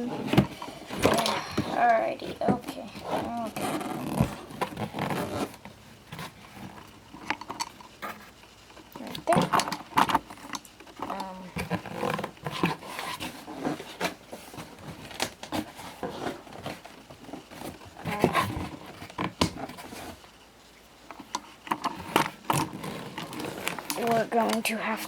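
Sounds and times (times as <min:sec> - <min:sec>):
toy packaging being handled: 0:21.2 - 0:25.0.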